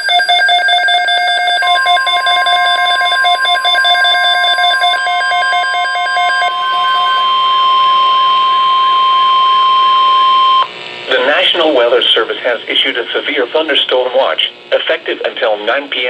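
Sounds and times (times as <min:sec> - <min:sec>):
pulsing electronic alarm tone: 0:00.0 - 0:11.5
steady high alarm tone: 0:00.0 - 0:12.3.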